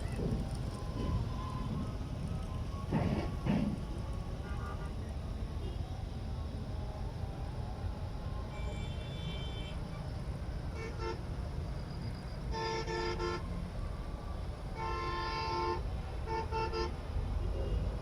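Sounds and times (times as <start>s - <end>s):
steady low rumble: 0.0s - 8.3s
vehicle horns honking: 4.4s - 5.0s, 8.6s - 9.8s, 12.5s - 13.4s, 14.8s - 16.9s.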